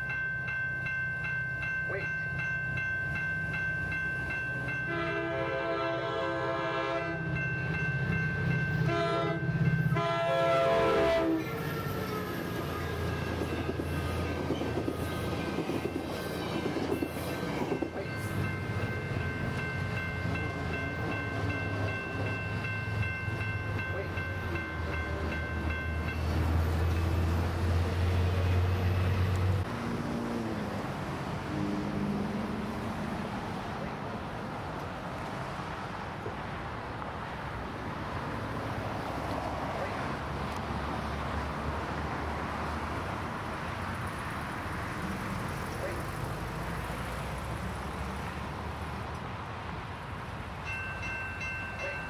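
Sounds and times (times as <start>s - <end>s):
locomotive horn blasts: 4.8s - 7.3s, 8.8s - 13.8s
train wheels on rails: 7.1s - 52.0s.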